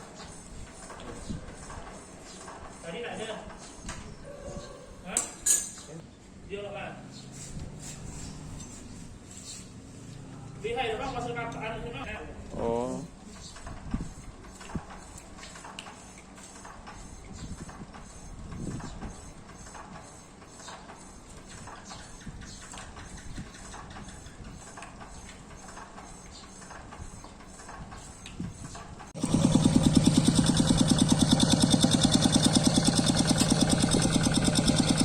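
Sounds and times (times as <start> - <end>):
small diesel engine running: 29.2 - 35.0.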